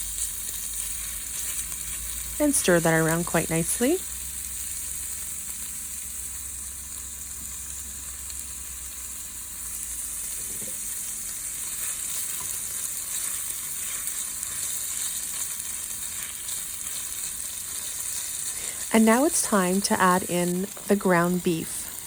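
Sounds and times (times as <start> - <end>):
onions sizzling in oil: 0.0 - 22.0
stirring scrapes: 11.6 - 17.0.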